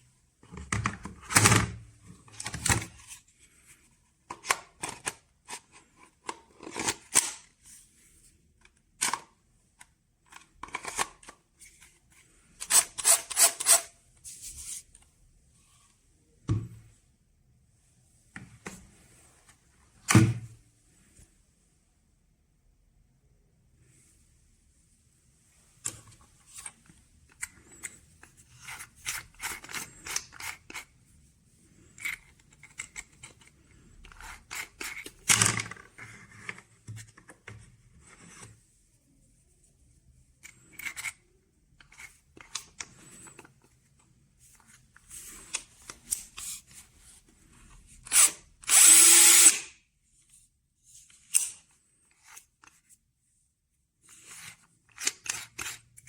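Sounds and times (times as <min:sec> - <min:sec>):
drill handling clicks and rattles: 0:48.1 - 0:49.7
impact drill running: 0:48.2 - 0:49.6.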